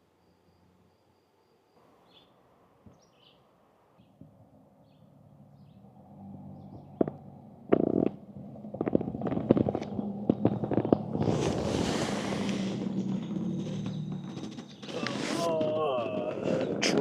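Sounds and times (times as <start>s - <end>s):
vehicle engine rumble: 1.8s - 17.0s
bird chirps: 1.9s - 4.2s, 4.8s - 5.9s, 6.5s - 7.2s.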